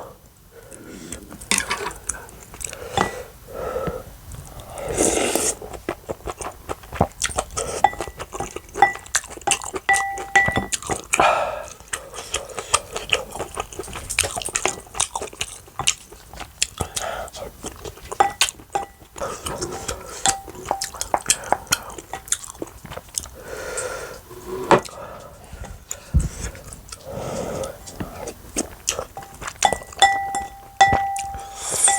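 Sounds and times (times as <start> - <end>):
chewing and slurping: 4.4 - 31.9
short metallic rings: 29.7 - 31.9.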